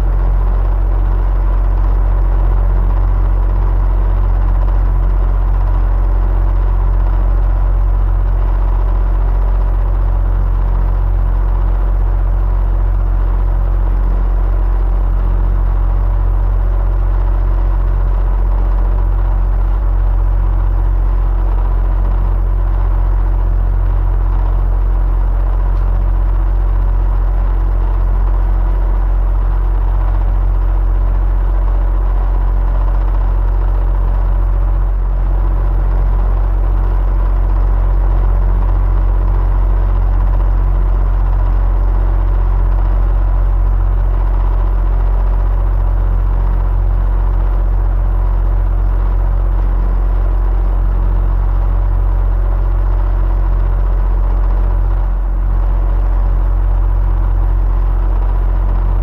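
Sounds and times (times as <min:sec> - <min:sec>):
electric fan whirring: 0:00.0 - 0:40.6, 0:54.0 - 0:59.0.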